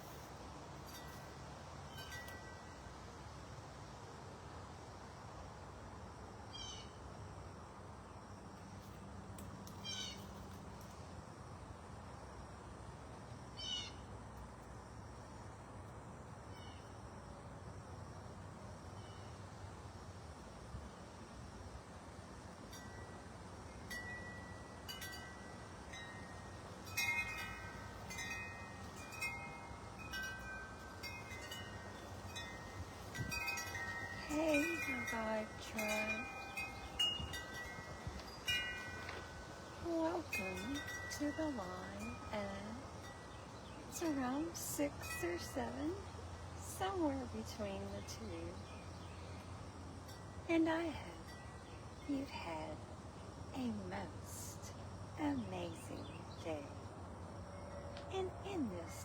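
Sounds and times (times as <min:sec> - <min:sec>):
faint background hum: 0:00.0 - 0:59.0
wind chimes ringing: 0:00.9 - 0:02.8, 0:22.7 - 0:46.4.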